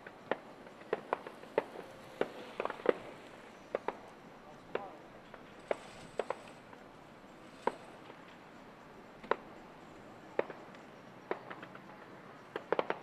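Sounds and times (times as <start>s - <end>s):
distant fireworks bangs: 0.0s - 6.7s, 7.5s - 8.2s, 10.3s - 11.8s, 12.5s - 13.0s
small firework pops: 0.0s - 6.9s, 7.5s - 8.4s, 9.2s - 9.6s, 10.3s - 13.0s.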